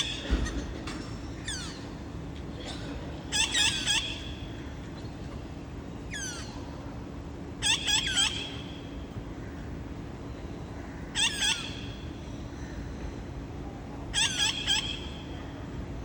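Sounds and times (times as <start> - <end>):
parrots harsh calls: 1.4 - 1.8, 3.3 - 4.6, 6.1 - 6.6, 7.6 - 8.8, 11.1 - 12.0, 14.1 - 15.2.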